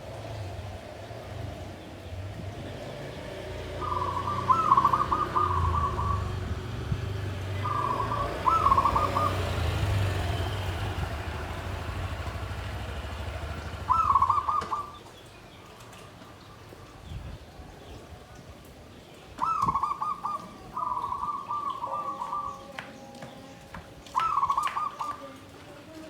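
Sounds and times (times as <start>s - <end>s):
dove cooing and purring: 3.8s - 10.3s, 13.8s - 15.0s, 19.4s - 23.1s.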